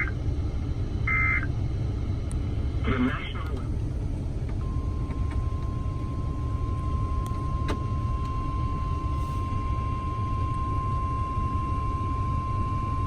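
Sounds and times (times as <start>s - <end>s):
radio reception hiss: 2.8s - 3.7s
steady alarm tone: 4.6s - 13.0s.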